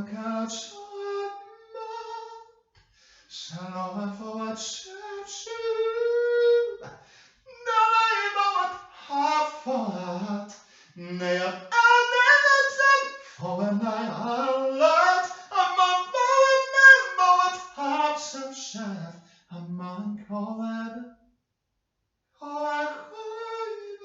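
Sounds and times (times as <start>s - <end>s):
person singing unaccompanied: 3.4s - 6.9s, 7.5s - 21.0s, 22.4s - 24.0s.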